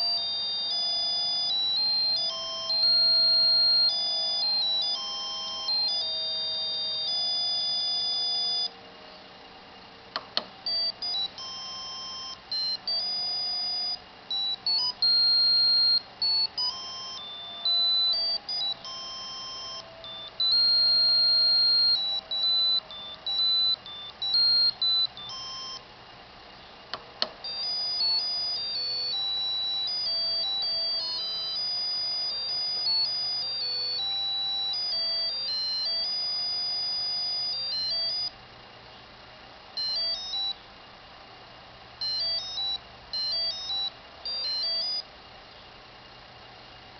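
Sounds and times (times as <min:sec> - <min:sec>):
monophonic beeping ringtone melody: 0:00.0 - 0:08.8, 0:10.5 - 0:25.9, 0:26.9 - 0:38.3, 0:39.8 - 0:40.6, 0:42.0 - 0:45.1
click: 0:10.1 - 0:10.5.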